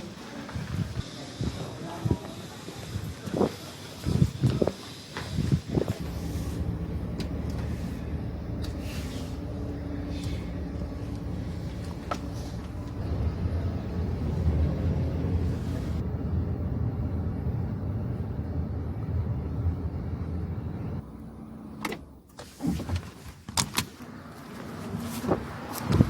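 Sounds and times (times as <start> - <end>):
vehicle engine rumble: 0.0 - 26.0.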